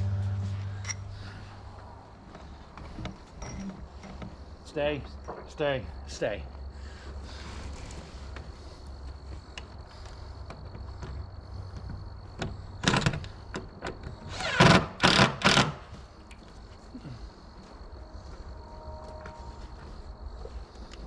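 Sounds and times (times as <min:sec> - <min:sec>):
light knocks of timber and tools: 0:05.2 - 0:05.6.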